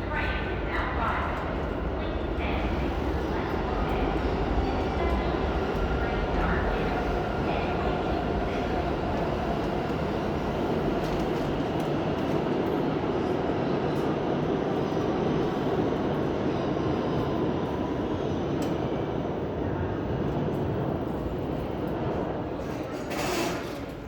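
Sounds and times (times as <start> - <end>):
subway train wheels rumbling: 0.0 - 24.0.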